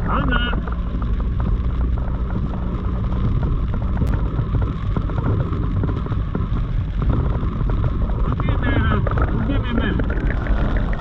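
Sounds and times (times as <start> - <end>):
heavy rain on a vehicle: 0.0 - 11.0
road and engine rumble: 0.0 - 11.0.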